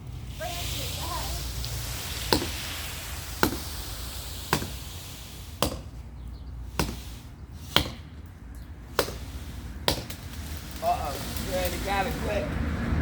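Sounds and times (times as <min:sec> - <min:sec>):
chopping into tree limb: 0:02.3 - 0:02.7, 0:03.4 - 0:03.7, 0:04.5 - 0:04.8, 0:05.6 - 0:06.0, 0:06.8 - 0:07.1, 0:07.7 - 0:08.1, 0:08.9 - 0:10.8.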